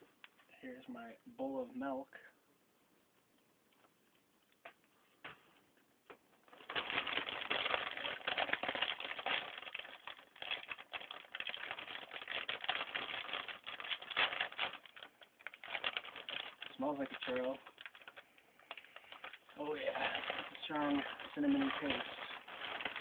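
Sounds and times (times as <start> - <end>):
cereal pouring into bowl: 19.3 - 23.0.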